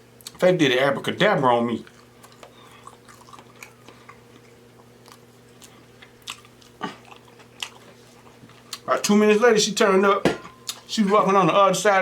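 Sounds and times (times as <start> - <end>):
faint steady hum: 0.0 - 12.0
person chewing food: 1.8 - 8.9.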